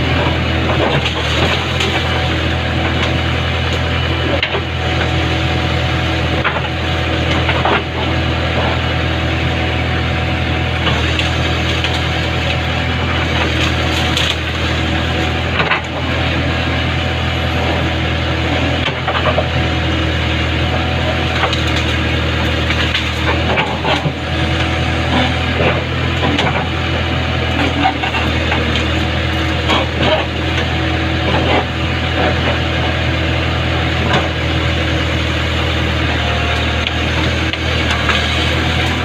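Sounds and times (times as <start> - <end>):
diesel engine running: 0.0 - 39.0
wood cracking and snapping: 10.9 - 14.9, 21.3 - 24.6.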